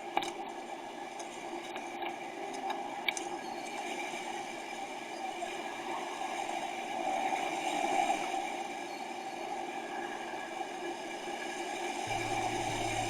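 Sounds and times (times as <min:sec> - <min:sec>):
rushing outdoor background noise: 0:11.0 - 0:13.0.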